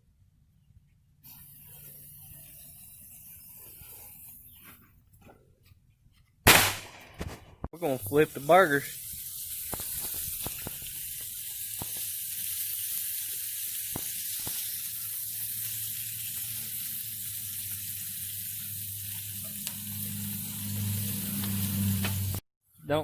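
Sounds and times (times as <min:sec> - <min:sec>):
burgers sizzling on a grill: 0:01.3 - 0:04.6, 0:07.8 - 0:22.4
pops and crackles: 0:06.5 - 0:07.7, 0:09.5 - 0:15.2
low hum: 0:19.2 - 0:22.4.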